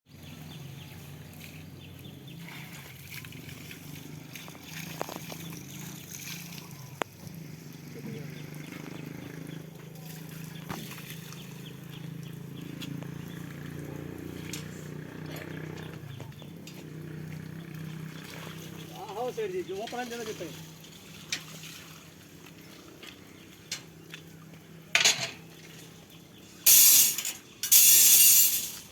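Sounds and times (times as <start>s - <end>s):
engine humming: 0.1s - 28.9s
wet concrete sloshing: 1.0s - 14.8s, 17.2s - 24.6s
harsh concrete scraping: 26.7s - 28.9s
sharp clinks: 26.7s - 28.9s.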